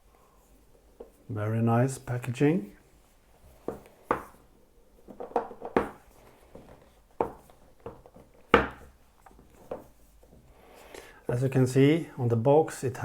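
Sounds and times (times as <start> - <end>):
cardboard box taps and knocks: 5.1 - 6.0, 6.6 - 9.9.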